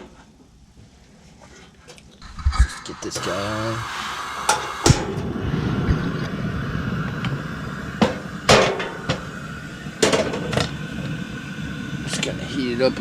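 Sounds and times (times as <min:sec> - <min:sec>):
steady low rushing noise: 0:02.2 - 0:03.8, 0:04.9 - 0:10.0.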